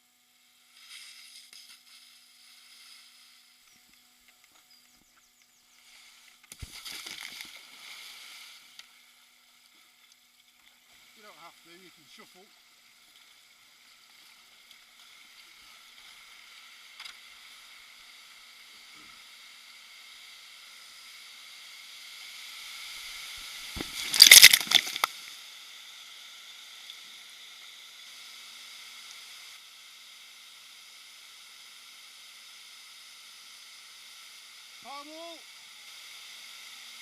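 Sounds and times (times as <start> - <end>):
loud close splashing: 23.7 - 25.1.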